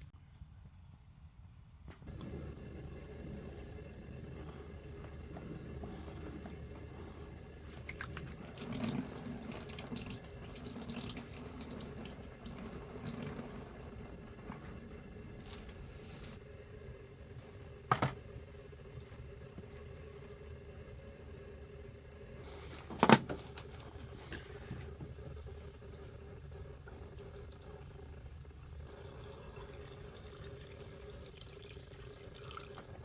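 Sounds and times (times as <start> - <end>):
running water: 5.8 - 15.7, 17.9 - 33.0.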